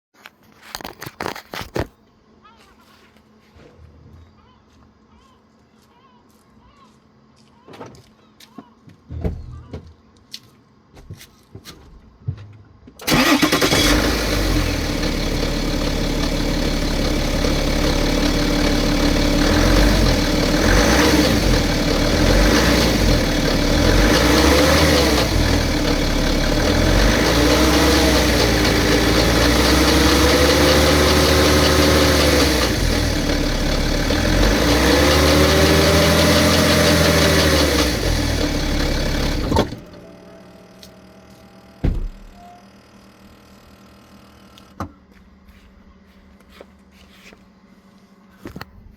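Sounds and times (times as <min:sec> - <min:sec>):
car engine starting and revving: 0:13.0 - 0:40.2.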